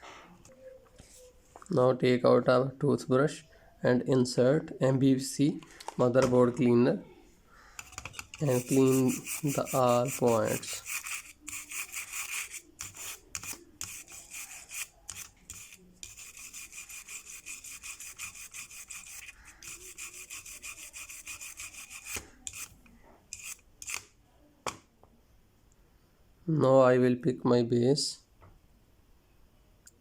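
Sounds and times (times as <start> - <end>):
toothbrush scrubbing circuit board: 7.8 - 24.0.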